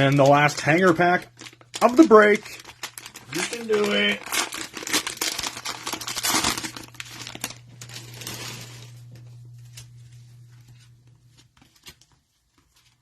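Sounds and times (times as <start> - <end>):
cards rustling and clicking: 0.0 - 8.4, 10.6 - 13.0
wrapper tearing and crinkling: 0.0 - 10.0.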